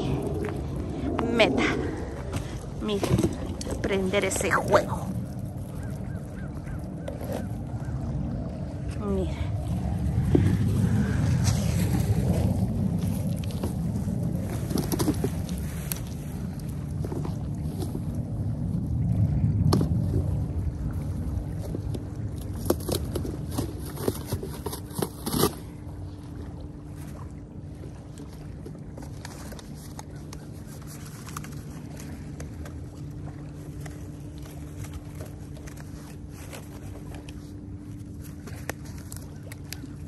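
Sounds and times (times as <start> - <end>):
low rumble: 0.0 - 25.1
low motor hum: 0.0 - 40.0.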